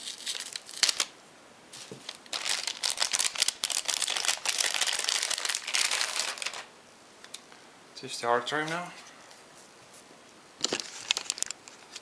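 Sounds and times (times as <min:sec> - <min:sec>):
plastic bag crinkling: 0:00.0 - 0:01.1, 0:01.8 - 0:06.7, 0:10.6 - 0:12.0.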